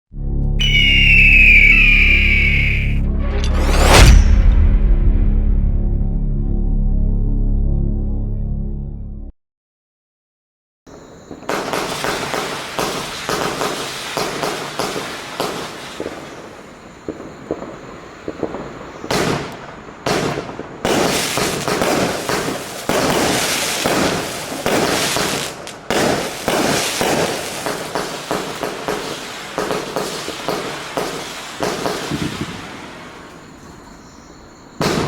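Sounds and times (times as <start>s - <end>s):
fireworks launching and bursting: 0.6s - 3.0s, 11.3s - 33.4s, 34.8s - 35.0s.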